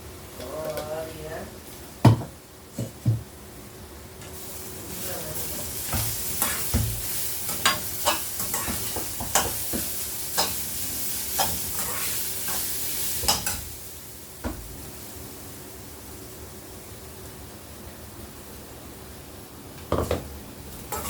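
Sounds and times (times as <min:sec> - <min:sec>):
food sizzling in a pan: 0:04.2 - 0:21.0
spatula scraping and knocking pan: 0:05.9 - 0:10.6.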